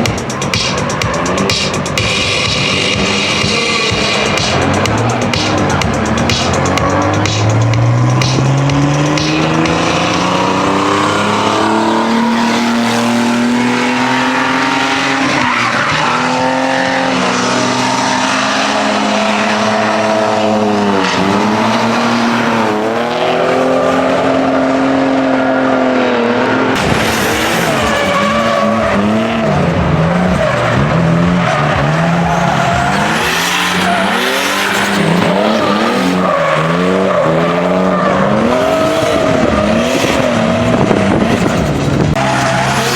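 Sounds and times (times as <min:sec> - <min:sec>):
car engine revving: 0:00.0 - 0:42.9
tyres squealing: 0:27.0 - 0:41.1.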